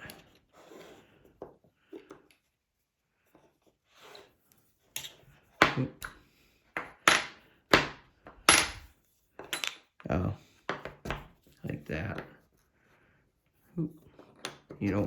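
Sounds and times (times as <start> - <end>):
ceramic rods knocking on wooden box: 6.8 - 9.8.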